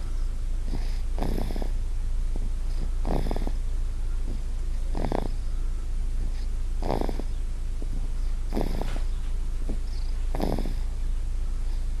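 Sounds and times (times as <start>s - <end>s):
steady low hum: 0.0s - 12.0s
child snoring: 0.6s - 1.8s, 2.4s - 3.6s, 4.2s - 5.6s, 6.2s - 11.0s.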